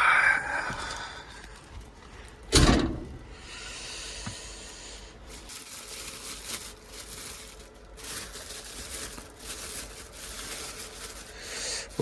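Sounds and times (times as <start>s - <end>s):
takeout bag rustling: 5.2s - 12.0s.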